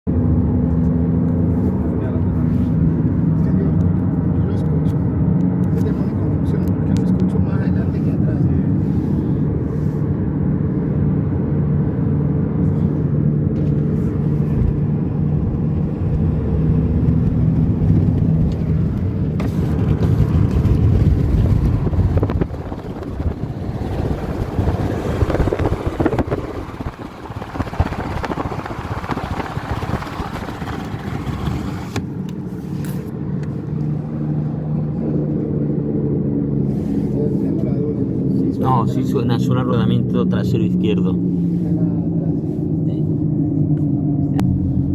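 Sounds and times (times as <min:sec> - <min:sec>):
tyre and road noise: 0:00.1 - 0:44.9
wheel bearing droning hum: 0:07.8 - 0:38.5.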